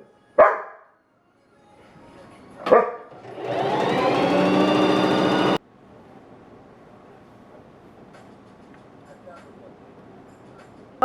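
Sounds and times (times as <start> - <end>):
dog barking: 0.4 - 0.9, 2.6 - 3.1
sewing machine running: 3.1 - 5.6.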